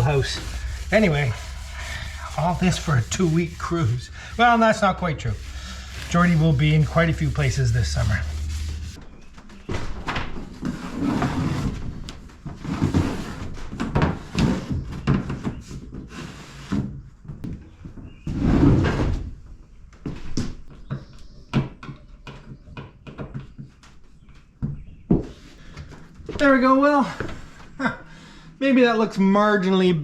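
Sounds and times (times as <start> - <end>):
wood scraping against wood: 0.0 - 9.0.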